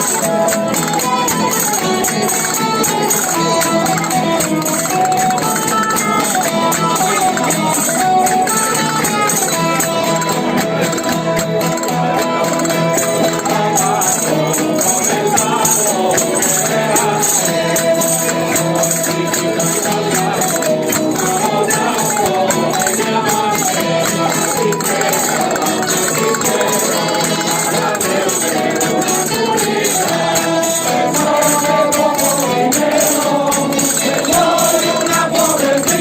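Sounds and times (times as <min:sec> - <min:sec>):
folk melody of held notes: 0:00.0 - 0:36.0
jingling percussion: 0:00.0 - 0:36.0.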